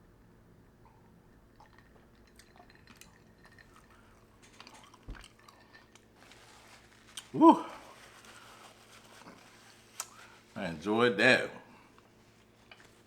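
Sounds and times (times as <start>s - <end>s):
chewing: 0.9s - 7.4s.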